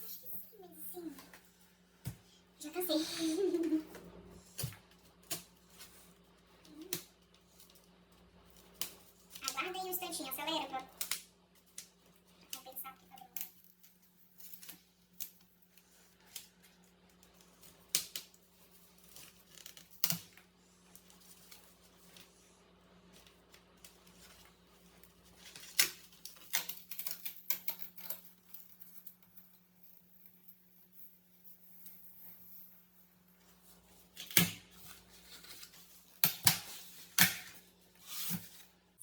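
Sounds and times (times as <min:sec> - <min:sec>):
cardboard and plastic packaging rustling: 0:33.5 - 0:38.8.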